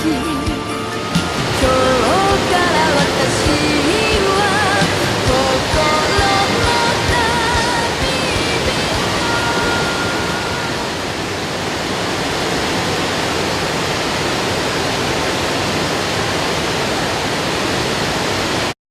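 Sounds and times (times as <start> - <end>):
waterfall rushing: 0.0 - 18.8
held high music note: 0.1 - 11.2.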